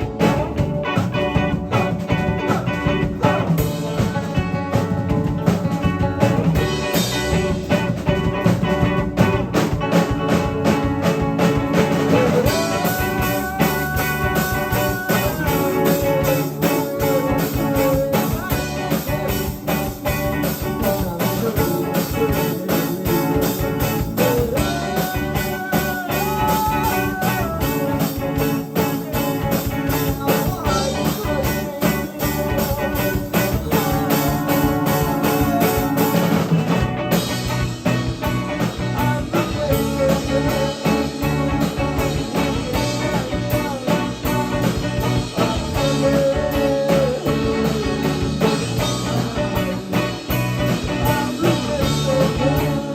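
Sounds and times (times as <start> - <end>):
rock band playing: 0.0 - 52.9.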